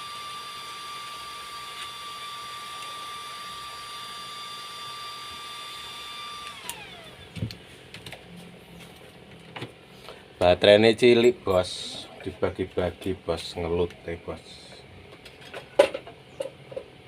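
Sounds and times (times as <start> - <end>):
small electric motor whining: 0.0 - 7.5.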